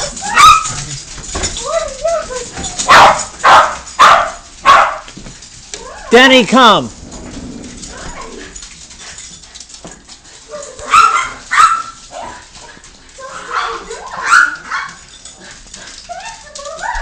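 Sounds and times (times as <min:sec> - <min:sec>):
dog barking: 0:02.9 - 0:05.1, 0:10.5 - 0:12.0, 0:13.5 - 0:15.0.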